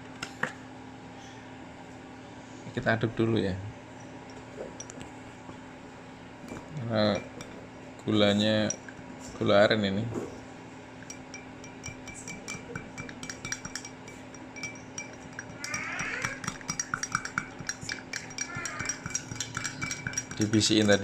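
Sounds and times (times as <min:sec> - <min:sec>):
spoon clinking stirring coffee: 0:06.5 - 0:07.6, 0:08.5 - 0:09.1, 0:11.0 - 0:21.0.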